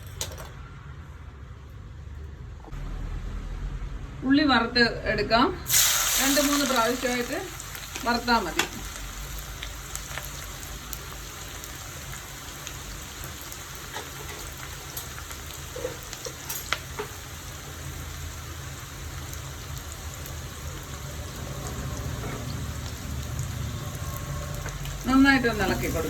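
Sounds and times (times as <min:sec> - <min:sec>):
onions sizzling in oil: 0:05.7 - 0:26.0.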